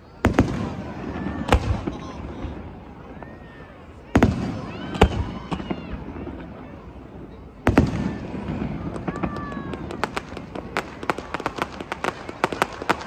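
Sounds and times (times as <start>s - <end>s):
crackling firework pops: 0.2s - 2.0s, 7.7s - 13.0s.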